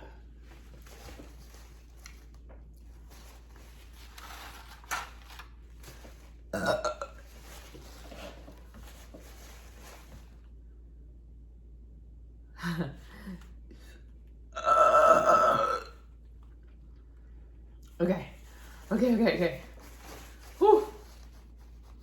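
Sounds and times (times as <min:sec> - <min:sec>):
woman burping: 0:06.5 - 0:07.2, 0:14.6 - 0:16.0.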